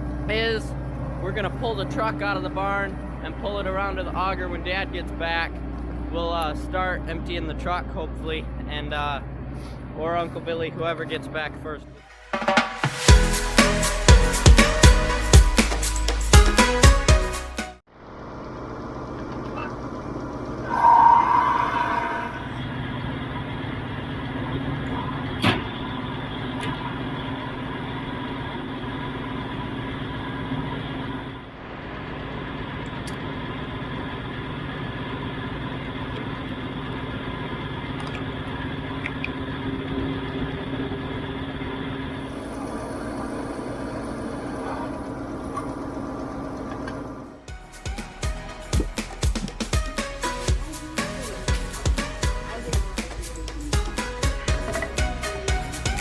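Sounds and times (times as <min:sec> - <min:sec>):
diesel engine idling: 0:17.9 - 0:22.6, 0:26.1 - 0:47.5.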